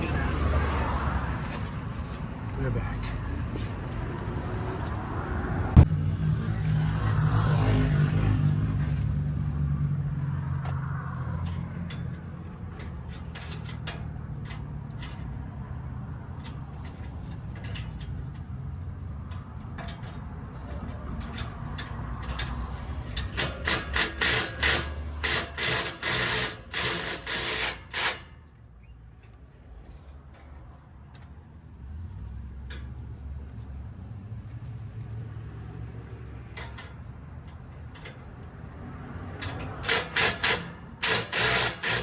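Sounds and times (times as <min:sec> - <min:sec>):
vehicle engine hum: 0:00.0 - 0:42.0
tools clicking and knocking: 0:10.5 - 0:15.5, 0:16.3 - 0:28.6, 0:36.2 - 0:42.0
power drill bursts: 0:23.4 - 0:28.2, 0:39.8 - 0:42.0.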